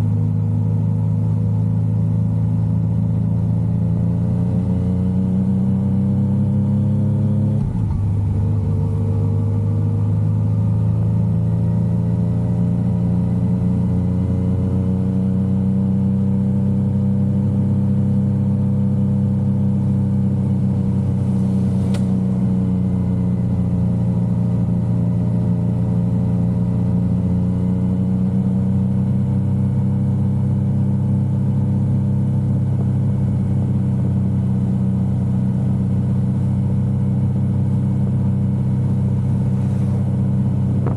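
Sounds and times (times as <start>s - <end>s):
motorcycle engine cruising: 19.7s - 24.6s, 32.8s - 40.9s
short click: 21.8s - 22.2s.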